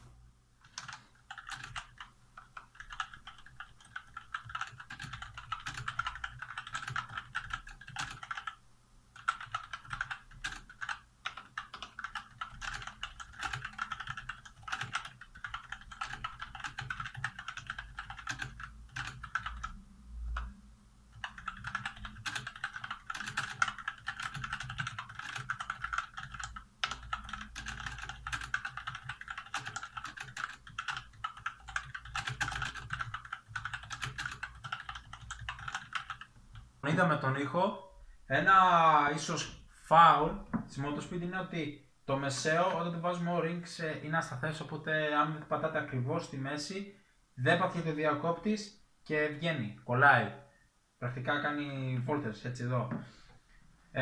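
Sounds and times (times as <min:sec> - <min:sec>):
fast typing on mechanical keyboard: 0:00.6 - 0:08.6, 0:09.2 - 0:19.8, 0:21.1 - 0:36.7.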